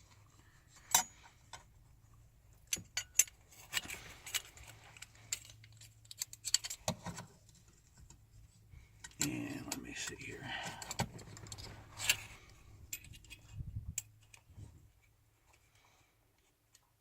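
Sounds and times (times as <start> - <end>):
light clicks and clinks: 2.7 - 6.9, 8.9 - 14.5.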